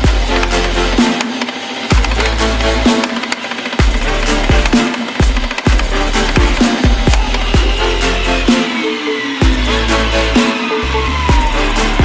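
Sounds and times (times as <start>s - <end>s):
deep kick drum: 0.0s - 0.5s, 1.9s - 2.3s, 3.8s - 8.0s, 9.4s - 9.8s
electronic music: 0.0s - 12.0s.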